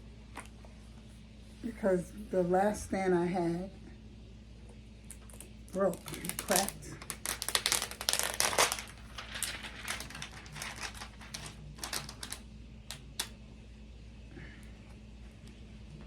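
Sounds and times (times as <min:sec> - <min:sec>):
packaging crinkling and clicking: 0:05.1 - 0:13.4.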